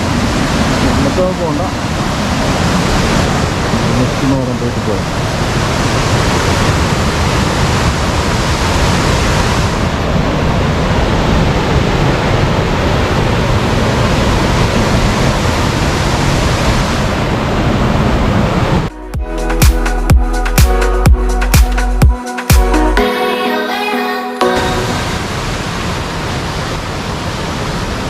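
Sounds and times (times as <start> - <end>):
waterfall roaring: 0.0 - 18.9, 24.4 - 28.0
background music with steady beat: 18.9 - 25.0.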